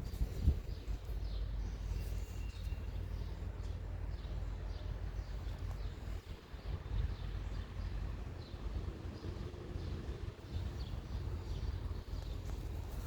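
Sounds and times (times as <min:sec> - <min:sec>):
birds chirping: 0:00.0 - 0:13.0
steady low rumble: 0:00.0 - 0:13.0.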